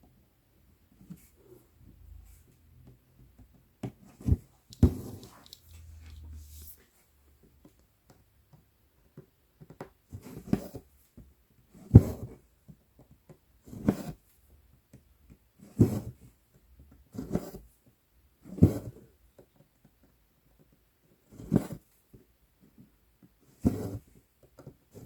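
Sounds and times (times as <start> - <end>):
thread rustling through fabric: 4.4 - 6.9.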